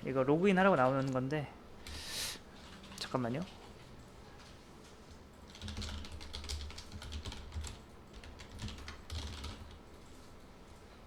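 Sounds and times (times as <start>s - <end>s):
computer keyboard typing: 5.4s - 10.2s.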